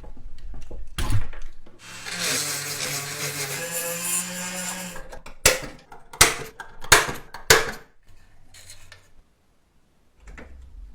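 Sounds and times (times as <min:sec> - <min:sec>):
power tool motor: 0:01.8 - 0:05.1.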